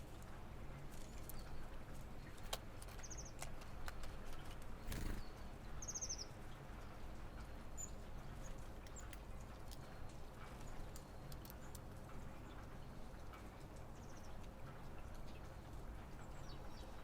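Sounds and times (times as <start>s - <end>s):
birds pecking taps: 2.2s - 5.2s.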